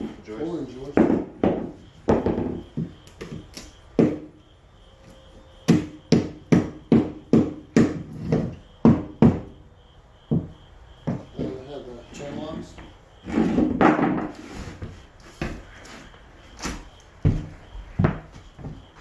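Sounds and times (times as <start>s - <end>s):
hammer striking wood: 0.9s - 4.3s, 5.7s - 9.6s, 10.3s - 11.6s, 13.5s - 14.4s.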